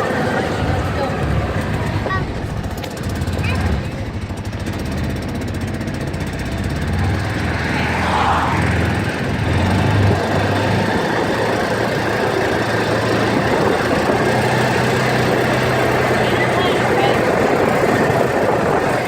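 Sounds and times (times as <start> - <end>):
off-road vehicle engine running: 0.0 - 19.0
wind rushing over microphone: 6.7 - 19.0.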